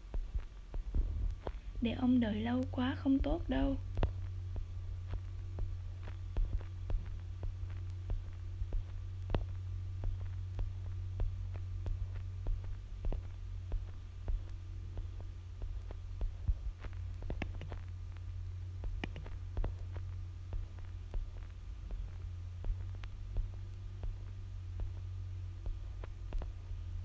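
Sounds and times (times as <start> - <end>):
steady low hum: 0.0 - 27.0
faint clicks: 3.7 - 25.0.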